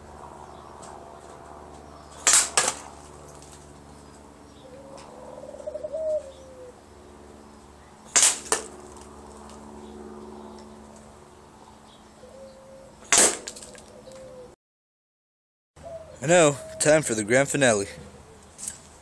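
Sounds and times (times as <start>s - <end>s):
crack of ammo striking: 2.2s - 2.9s, 8.1s - 8.7s, 13.1s - 13.8s.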